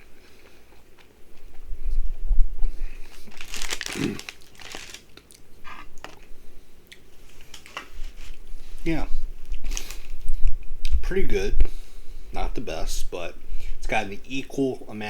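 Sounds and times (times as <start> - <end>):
person chewing crunchy food: 3.0 - 6.3
crackling: 3.2 - 6.2.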